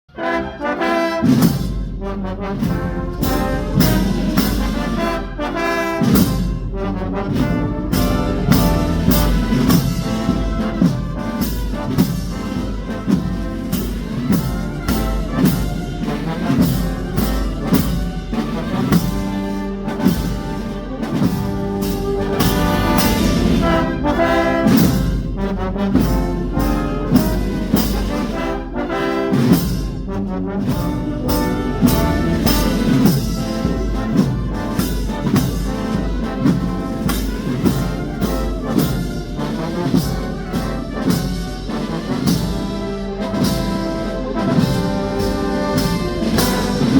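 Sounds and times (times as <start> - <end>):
marching band playing slow march: 0.1 - 46.9
trumpets and trombones melody: 0.1 - 46.9
steady drumbeat: 1.2 - 46.9.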